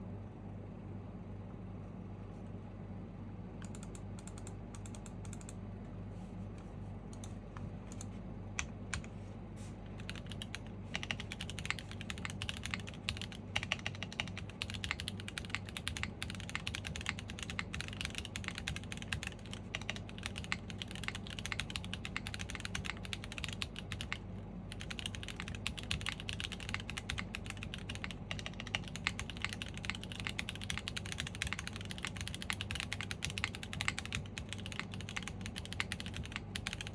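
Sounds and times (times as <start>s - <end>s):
typing on mechanical keyboard: 10.0s - 36.9s.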